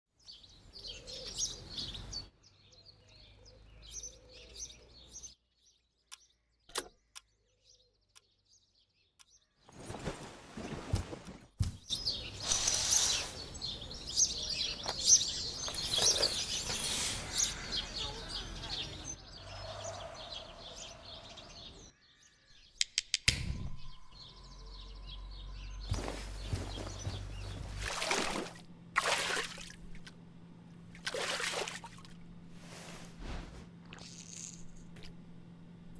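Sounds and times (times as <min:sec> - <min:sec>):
small birds chirping: 0:00.1 - 0:09.8, 0:11.6 - 0:23.2, 0:23.8 - 0:28.2
sharp clicks: 0:22.8 - 0:23.5
low hum: 0:23.3 - 0:35.9
swishing rustle: 0:32.5 - 0:33.7.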